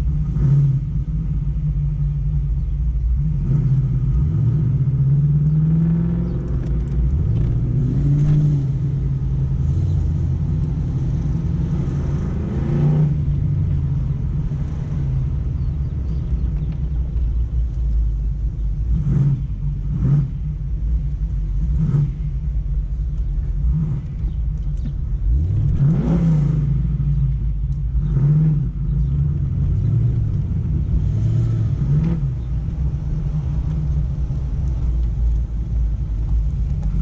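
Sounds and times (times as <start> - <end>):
car engine revving while driving: 0.0 - 37.0.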